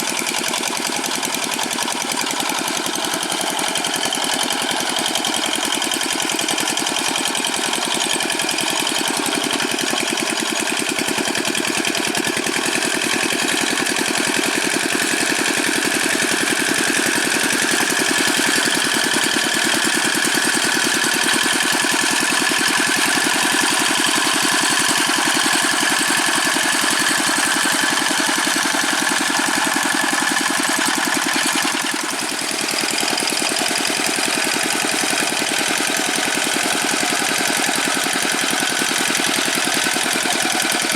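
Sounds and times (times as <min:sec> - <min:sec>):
diesel engine chugging: 0:00.0 - 0:40.9.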